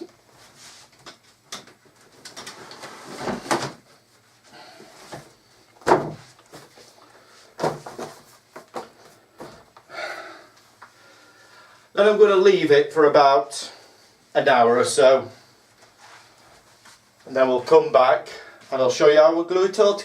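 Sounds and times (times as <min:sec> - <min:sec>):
books thumping on a board: 0:05.1 - 0:06.7, 0:07.6 - 0:09.6.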